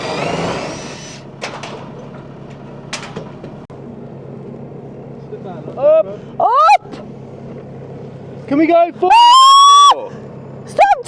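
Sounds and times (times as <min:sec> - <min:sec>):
impact driver whirring: 0:00.0 - 0:01.3.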